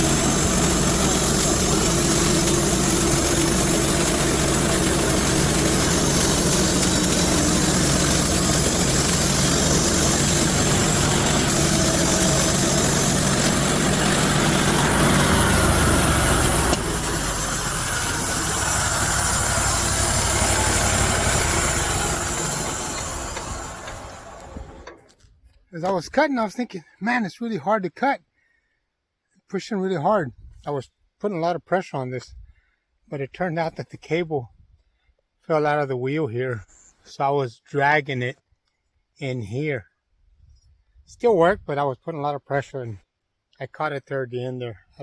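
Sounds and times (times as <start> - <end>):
cable dragging: 0.0 - 25.1
sawmill engine cutting log: 0.0 - 25.1.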